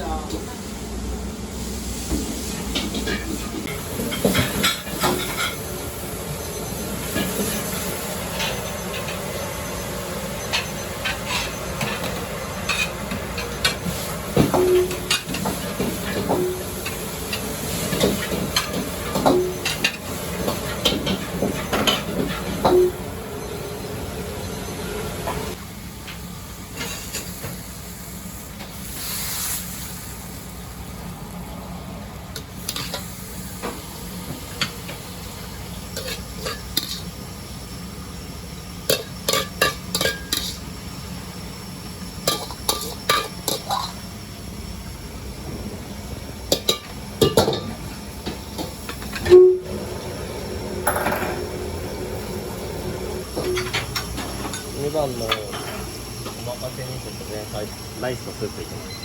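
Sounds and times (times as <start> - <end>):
kitchen noise: 2.0 - 23.2, 34.4 - 37.3, 38.8 - 40.8, 42.2 - 44.2, 46.4 - 50.1, 50.8 - 52.3, 53.2 - 59.0
metal spatula clanking against wok: 38.9 - 40.6.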